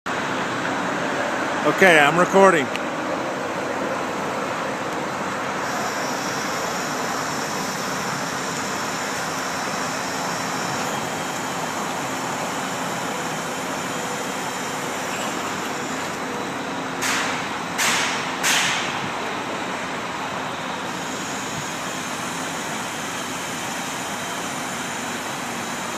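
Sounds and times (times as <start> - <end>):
drill press running: 5.4 - 25.9.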